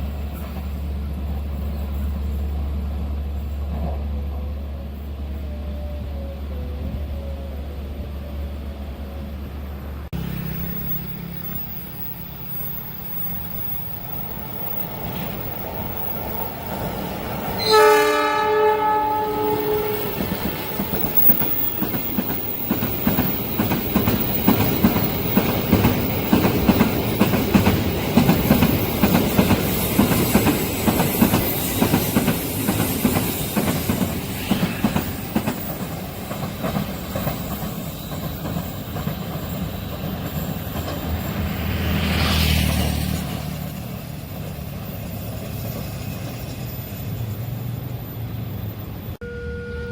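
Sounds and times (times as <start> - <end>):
train horn blast: 17.5 - 21.4, 49.2 - 49.9
train wheels clattering over rails: 19.4 - 46.9.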